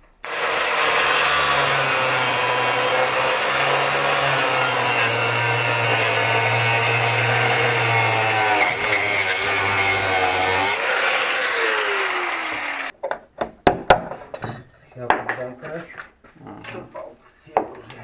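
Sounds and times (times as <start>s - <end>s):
angle grinder cutting steel: 0.2s - 12.9s.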